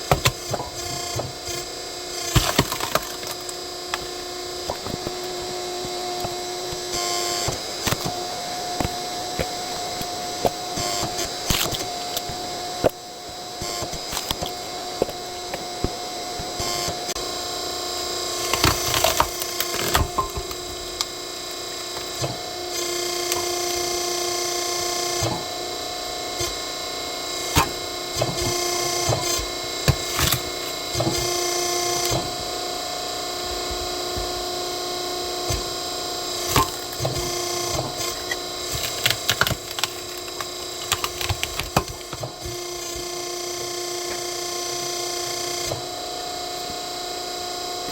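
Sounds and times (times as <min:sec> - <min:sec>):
log splitter humming: 0:00.0 - 0:47.9
logs cracking and snapping: 0:02.3 - 0:06.9, 0:07.5 - 0:13.0, 0:13.8 - 0:16.0, 0:18.5 - 0:21.1, 0:29.9 - 0:30.8, 0:36.4 - 0:37.2, 0:37.8 - 0:42.6.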